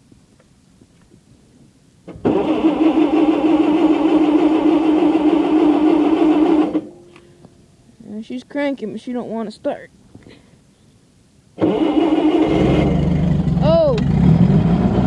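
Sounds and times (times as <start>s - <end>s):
engine cranking without firing: 2.1s - 6.9s, 11.6s - 15.0s.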